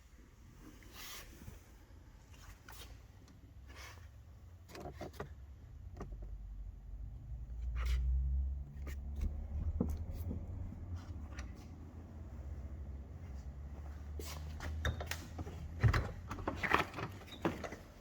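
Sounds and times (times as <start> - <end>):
clicks and knocks of plastic parts: 14.8 - 18.0.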